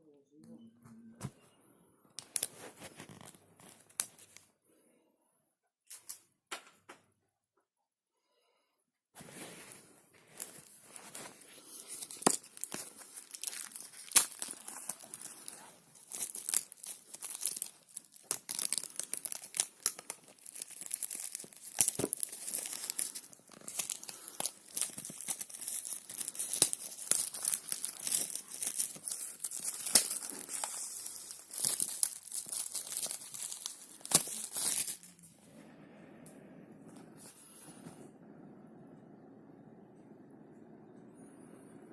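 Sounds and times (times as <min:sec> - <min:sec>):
plastic wrap crinkling and tearing: 0:02.2 - 0:04.5, 0:10.3 - 0:35.4.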